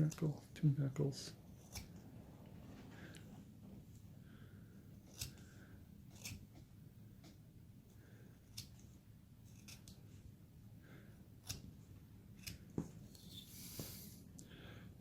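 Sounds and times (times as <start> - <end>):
carving tool snicking wood: 1.5 - 2.0, 5.0 - 5.5, 6.1 - 7.4, 9.5 - 10.0, 12.4 - 14.1.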